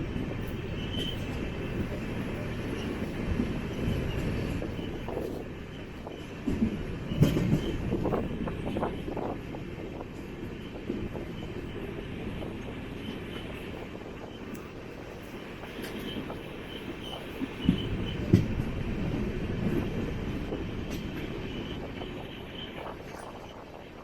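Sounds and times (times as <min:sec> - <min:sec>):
low rumble of train coach: 0:00.0 - 0:24.0
train wheel knocks: 0:02.7 - 0:09.4, 0:15.6 - 0:22.2.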